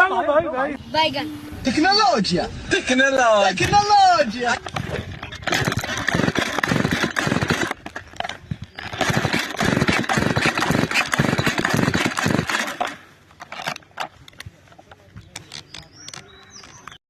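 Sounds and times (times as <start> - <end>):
chainsaw running: 4.6 - 13.8.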